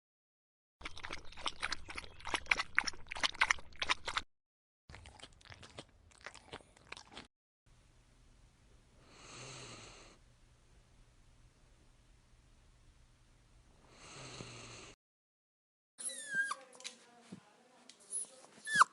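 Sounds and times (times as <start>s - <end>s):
dog chewing with crunches: 4.9s - 7.3s.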